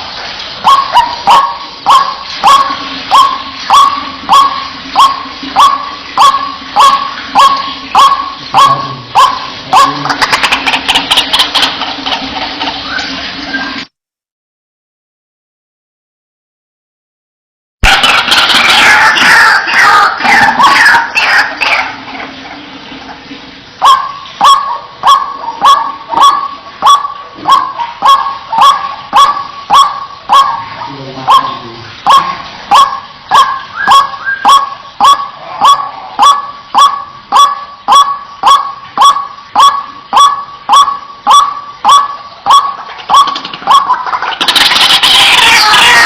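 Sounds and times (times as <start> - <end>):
bird sharp kwak calls: 23.8 - 46.0.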